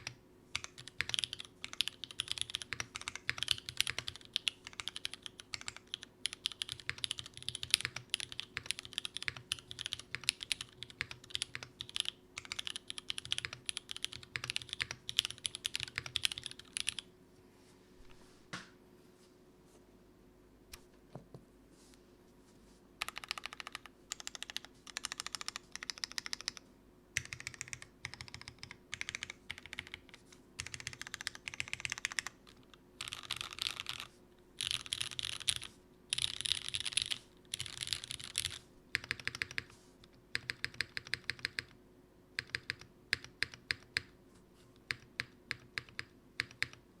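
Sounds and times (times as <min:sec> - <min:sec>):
mechanical keyboard typing: 0:00.0 - 0:17.1, 0:23.0 - 0:26.6, 0:27.2 - 0:39.7, 0:40.3 - 0:41.8, 0:42.4 - 0:44.1, 0:44.8 - 0:46.8.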